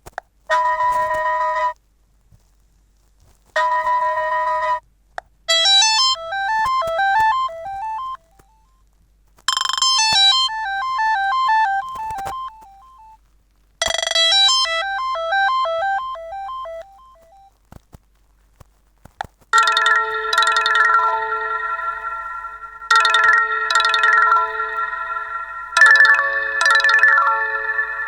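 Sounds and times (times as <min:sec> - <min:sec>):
electronic ringtone melody: 0:00.6 - 0:01.8, 0:03.6 - 0:04.8, 0:05.5 - 0:08.5, 0:09.8 - 0:13.1, 0:14.1 - 0:17.5, 0:19.6 - 0:28.0.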